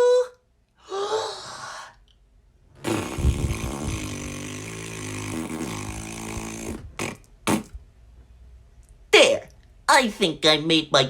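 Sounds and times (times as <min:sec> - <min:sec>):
rough buzzing vocal noise: 0:02.8 - 0:07.8.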